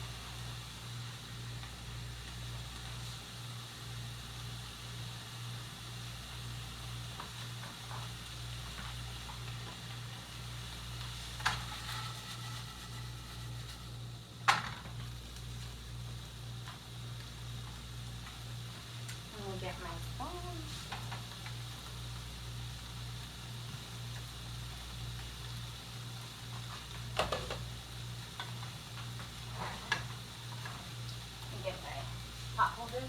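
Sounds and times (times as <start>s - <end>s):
shrimp sizzling in a pan: 0.0s - 33.0s
knocks against a pan: 27.2s - 27.6s.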